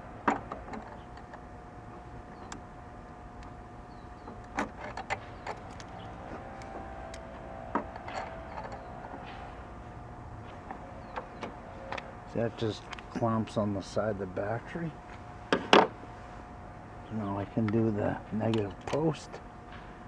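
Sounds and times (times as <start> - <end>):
faint steady hum: 0.0 - 20.0
hand tools clicking on metal: 4.2 - 13.5.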